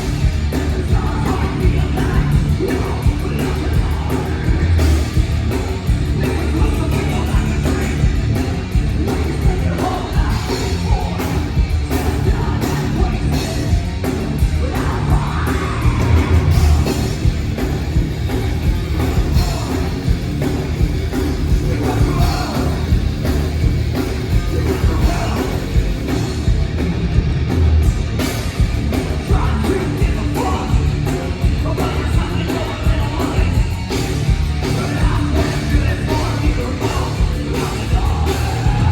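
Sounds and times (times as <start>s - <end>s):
heavy rock band playing live: 0.0s - 38.9s
shouted vocals: 14.6s - 17.2s, 24.4s - 25.9s.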